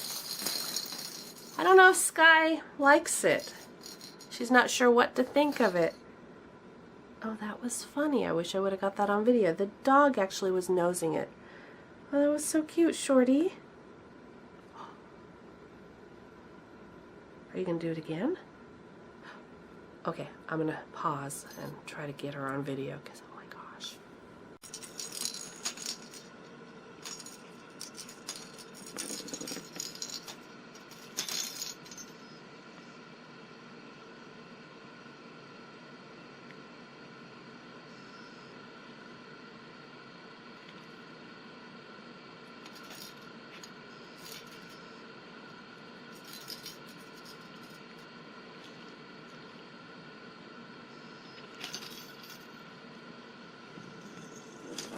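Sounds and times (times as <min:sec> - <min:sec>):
balls rattling inside cat toy: 0:00.0 - 0:01.9, 0:05.2 - 0:06.0, 0:24.6 - 0:26.4, 0:27.0 - 0:32.2.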